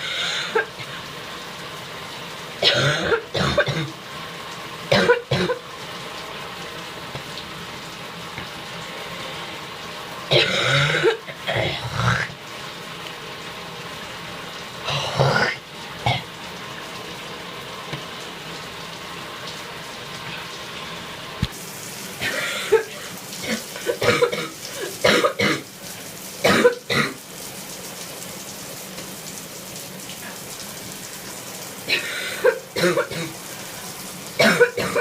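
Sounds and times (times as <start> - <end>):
shower running hiss: 0.0 - 35.0
person coughing: 2.6 - 4.0, 4.9 - 5.6, 10.3 - 11.9, 22.2 - 25.6, 26.4 - 27.2, 31.9 - 33.4, 34.4 - 35.0.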